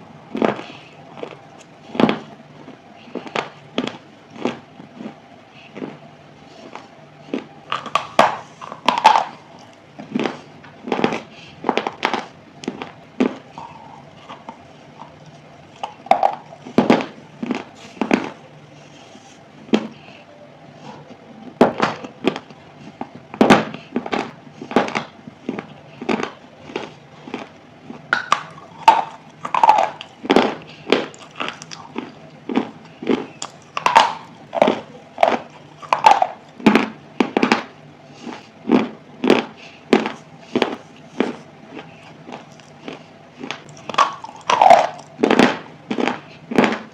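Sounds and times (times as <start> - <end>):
faint steady hum: 0.0 - 46.9
person crunching something hard: 22.0 - 46.9.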